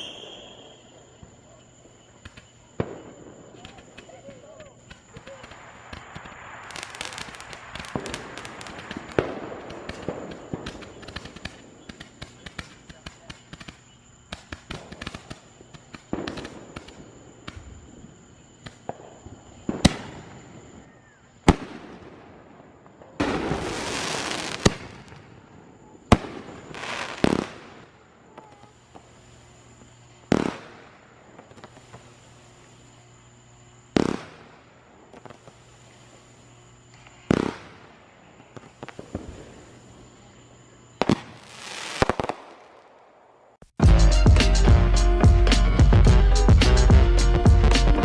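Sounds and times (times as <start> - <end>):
loud firework bangs: 0.0 - 33.0, 33.9 - 35.7, 36.8 - 43.1
fireworks crackling and popping: 0.0 - 48.0
firework hissing rush: 2.0 - 21.6, 23.3 - 25.2, 28.4 - 33.2, 34.0 - 37.9.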